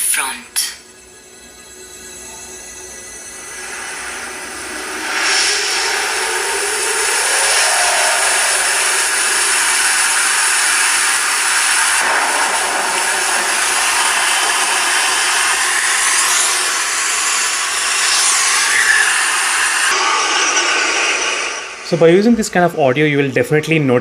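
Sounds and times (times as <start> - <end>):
faint sweeping tones: 0.0 - 22.8
dense rushing noise: 3.4 - 22.0.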